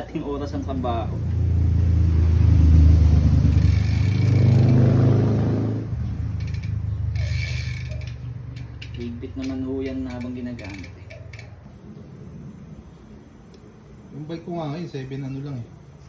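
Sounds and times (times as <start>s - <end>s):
vehicle engine driving past: 0.5s - 9.3s.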